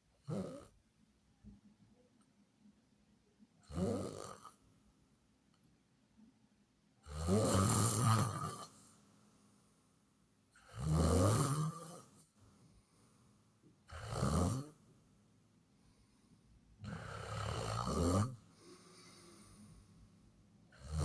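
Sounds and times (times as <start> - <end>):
quiet breaths: 0.0 - 21.0
person snoring loudly: 3.7 - 4.4, 7.1 - 8.8, 10.6 - 12.1, 13.9 - 14.8, 16.8 - 19.4, 20.7 - 21.0.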